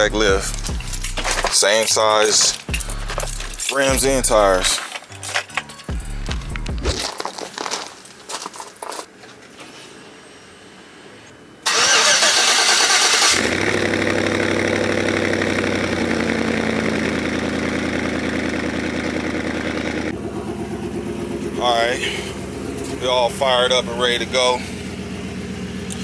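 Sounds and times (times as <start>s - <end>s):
truck engine cranking and idling: 0.0s - 6.9s, 11.6s - 26.0s.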